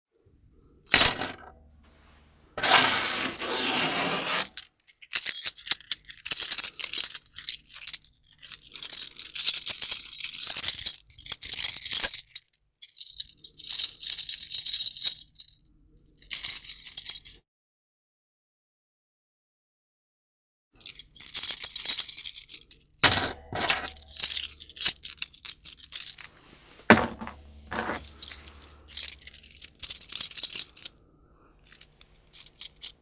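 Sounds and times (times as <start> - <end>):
metal keys jingling: 0.9 - 1.5, 4.2 - 15.6, 16.2 - 17.4, 20.8 - 30.9, 31.6 - 33.0.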